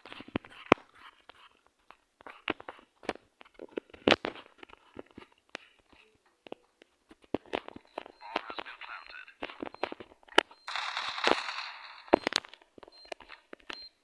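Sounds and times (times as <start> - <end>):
sharp clicks and knocks: 10.6 - 13.9.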